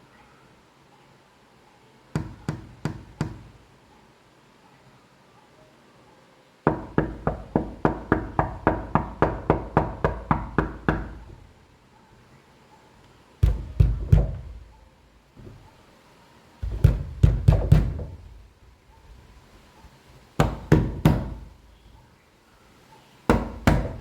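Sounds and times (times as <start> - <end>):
knocking on a door: 2.2 - 3.6, 6.7 - 11.5, 13.4 - 14.7, 16.6 - 18.4, 20.4 - 21.6, 23.3 - 24.0.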